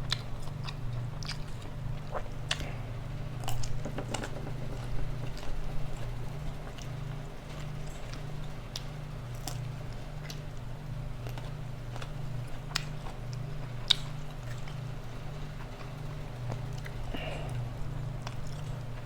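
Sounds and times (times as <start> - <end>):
person chewing: 0.0 - 3.8
steady low hum: 0.0 - 19.0.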